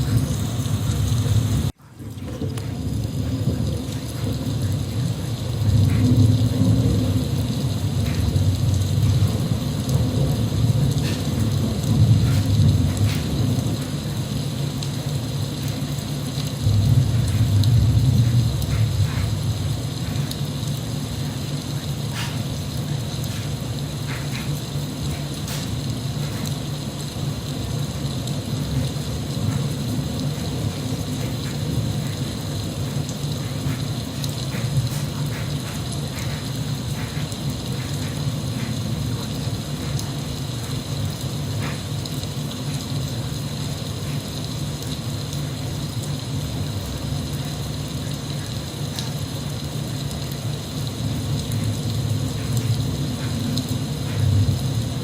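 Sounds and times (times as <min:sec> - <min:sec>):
raindrops ticking on a surface: 0:00.0 - 0:55.0
steady rain: 0:00.0 - 0:55.0.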